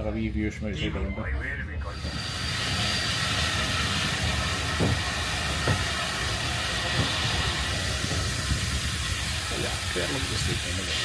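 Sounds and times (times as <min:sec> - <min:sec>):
train wheel and air noise: 0:01.7 - 0:11.0
train wheels knocking: 0:02.2 - 0:09.9.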